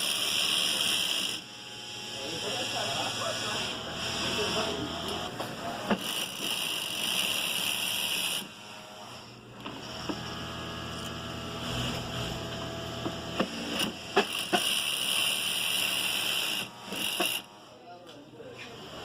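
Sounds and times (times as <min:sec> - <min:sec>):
sewing machine running: 0:13.6 - 0:17.5.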